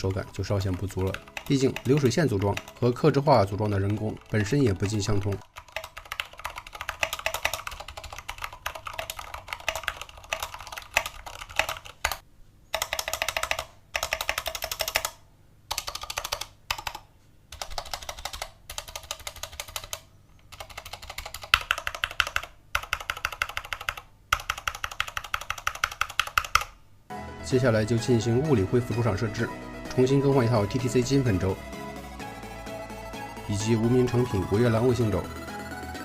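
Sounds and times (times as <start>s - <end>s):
mechanical keyboard typing: 0.0s - 26.8s.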